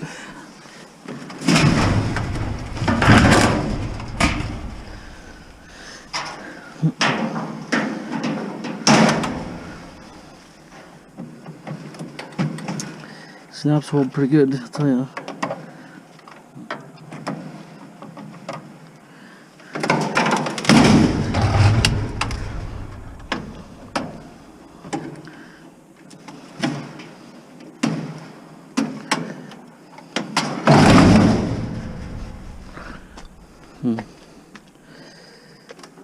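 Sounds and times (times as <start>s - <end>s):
panel scraping and rattling: 1.4s - 6.3s, 8.9s - 10.3s, 20.7s - 24.6s, 30.7s - 33.8s.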